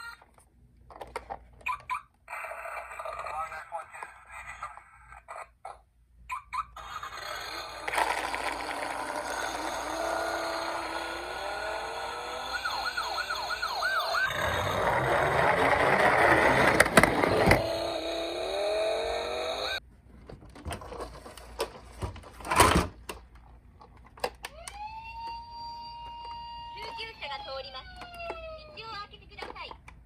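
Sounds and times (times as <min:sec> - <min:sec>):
toy electronic sirens: 0:06.3 - 0:19.8, 0:24.5 - 0:28.9.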